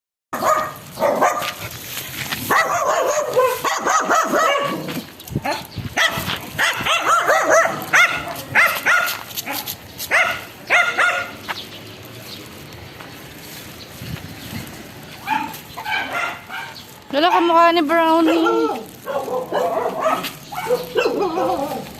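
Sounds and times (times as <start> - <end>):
dog barking and yipping: 0.4 - 1.7, 2.4 - 11.4, 15.2 - 21.9.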